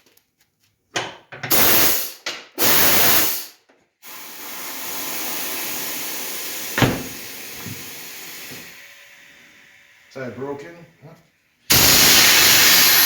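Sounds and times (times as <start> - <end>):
loud air blast: 1.5 - 8.8, 11.7 - 13.0
steady air hissing: 1.5 - 10.5, 11.7 - 13.0.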